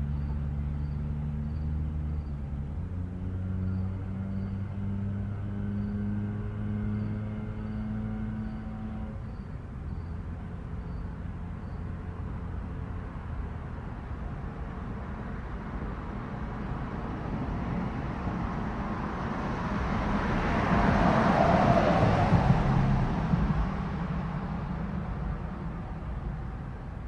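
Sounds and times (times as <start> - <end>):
car engine rumble and tyre noise: 0.0 - 27.0
faint cricket chirps: 0.1 - 2.4, 7.0 - 12.2.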